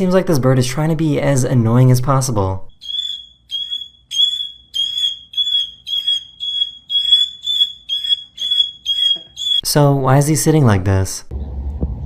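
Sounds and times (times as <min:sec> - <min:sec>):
bird giving high beeps: 0:02.8 - 0:09.7.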